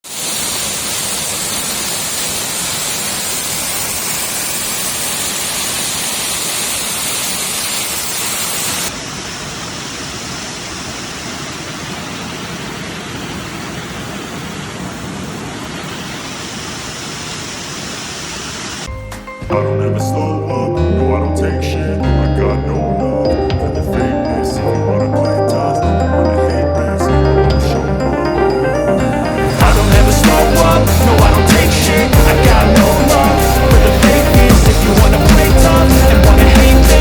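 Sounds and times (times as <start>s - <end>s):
waterfall rushing: 0.0s - 18.9s, 26.4s - 37.0s.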